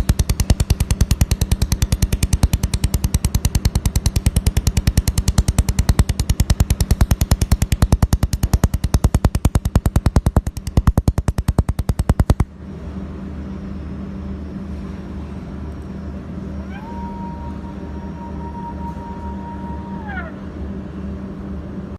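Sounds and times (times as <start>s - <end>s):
laser welder snapping pulses: 0.0s - 12.5s
steady machine hum: 0.0s - 21.9s.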